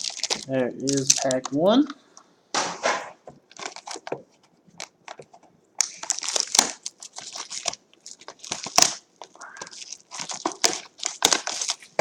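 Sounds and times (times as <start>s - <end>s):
card pack packaging crinkling: 0.0s - 1.6s, 3.5s - 4.2s, 4.8s - 12.0s.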